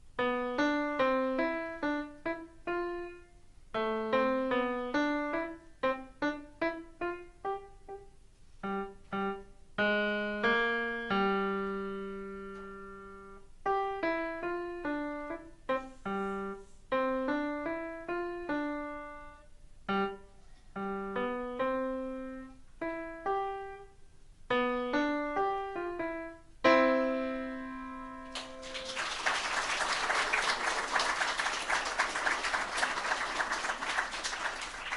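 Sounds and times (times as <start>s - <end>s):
solo piano piece: 0.0s - 29.0s
audience applause: 28.3s - 34.9s.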